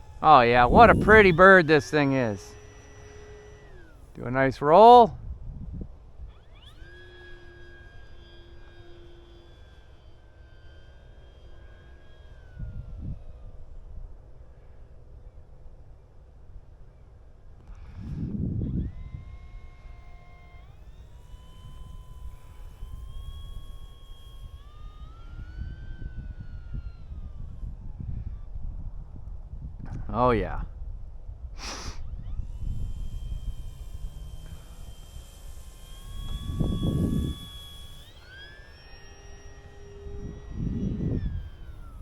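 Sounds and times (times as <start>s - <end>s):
wind rumbling on microphone: 0.0s - 2.1s, 21.6s - 37.7s, 40.0s - 42.0s
model plane motor whining: 0.0s - 42.0s.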